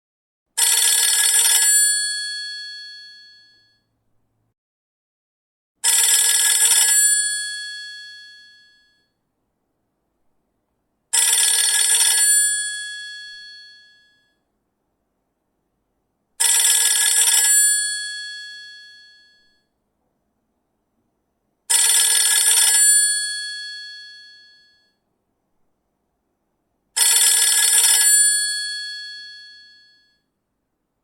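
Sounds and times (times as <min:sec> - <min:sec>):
telephone bell ringing: 0:00.6 - 0:03.9, 0:05.8 - 0:09.2, 0:11.1 - 0:14.4, 0:16.4 - 0:19.7, 0:21.7 - 0:25.0, 0:27.0 - 0:30.3.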